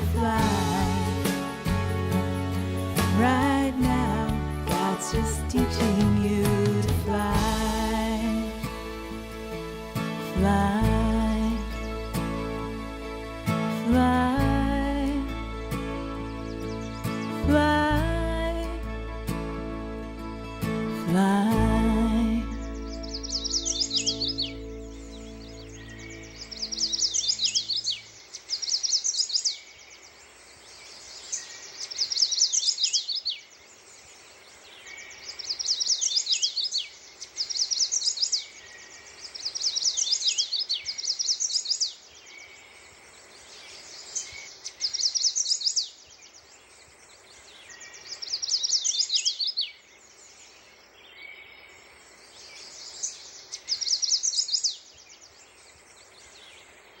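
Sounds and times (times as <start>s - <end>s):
songbird chattering song: 16.1s - 18.7s, 21.2s - 57.0s.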